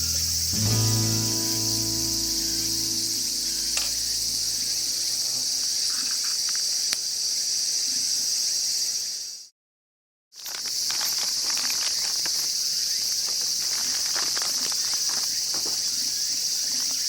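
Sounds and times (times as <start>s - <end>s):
guitar tune: 0.0s - 5.2s
crickets trilling: 0.0s - 9.5s, 10.4s - 17.0s.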